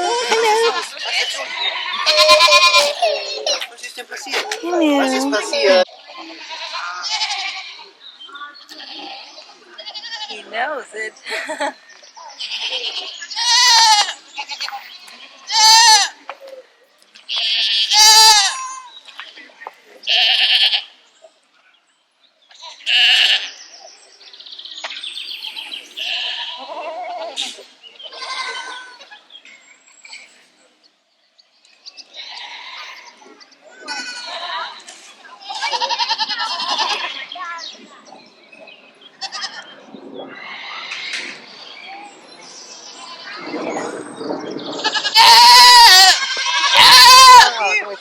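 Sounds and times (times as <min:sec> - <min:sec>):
quavering bleat-like call: 0:00.0 - 0:03.1, 0:05.6 - 0:07.9, 0:12.4 - 0:14.7, 0:17.3 - 0:18.9, 0:20.1 - 0:20.9, 0:22.5 - 0:23.5, 0:26.0 - 0:27.4, 0:28.1 - 0:29.1, 0:32.1 - 0:33.0, 0:33.8 - 0:34.8, 0:44.7 - 0:47.7.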